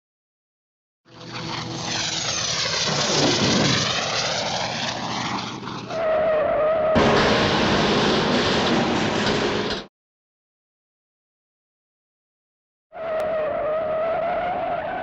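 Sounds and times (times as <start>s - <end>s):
airplane engine rushing past: 1.1s - 9.9s
rough skidding rushing noise: 1.1s - 9.9s
wavering whistle-like tone: 13.0s - 15.0s.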